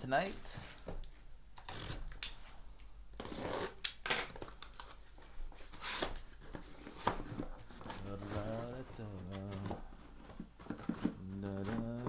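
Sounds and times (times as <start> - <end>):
scraping and rustling: 4.9 - 12.0.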